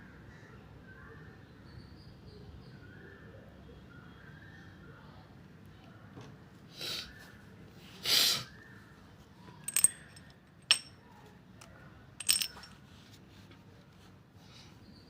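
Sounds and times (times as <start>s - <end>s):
small metal parts clinking: 9.6s - 11.0s, 12.2s - 12.8s.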